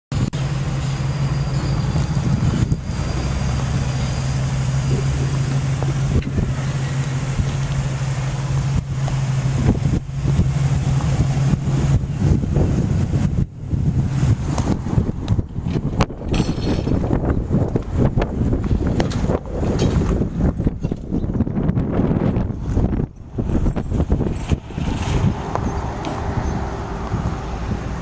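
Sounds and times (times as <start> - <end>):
car engine idling: 0.1 - 16.4
outdoor noise: 0.1 - 28.0.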